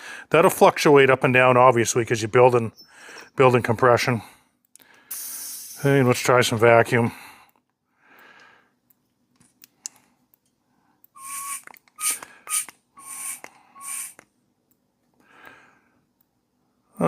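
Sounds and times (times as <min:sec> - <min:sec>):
hand vacuum pump hissing: 0:05.1 - 0:05.9, 0:11.2 - 0:14.2.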